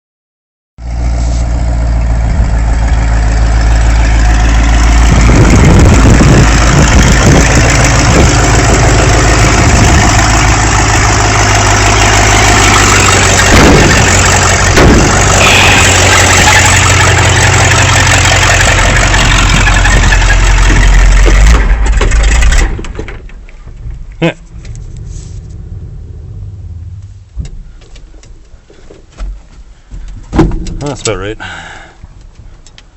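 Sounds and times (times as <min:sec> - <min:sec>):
loud vee eight engine running: 0:00.8 - 0:22.9, 0:23.6 - 0:27.4.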